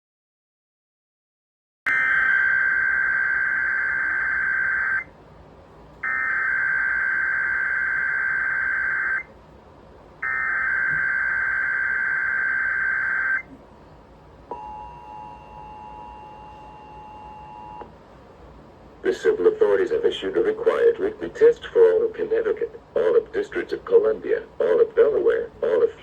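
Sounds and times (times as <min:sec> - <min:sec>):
two-tone attention signal: 0:10.2 - 0:13.4, 0:14.5 - 0:17.9.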